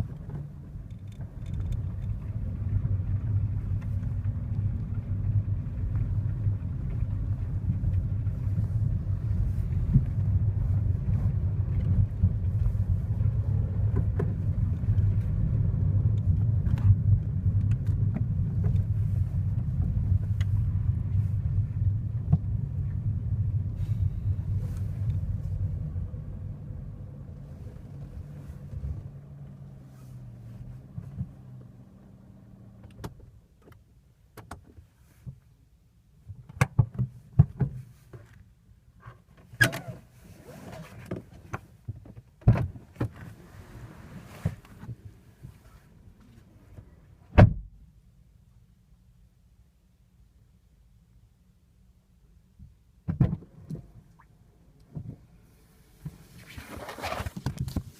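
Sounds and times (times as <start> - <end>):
engine and road rumble: 0.0 - 57.9
cabin ticks and creaks: 0.3 - 2.2.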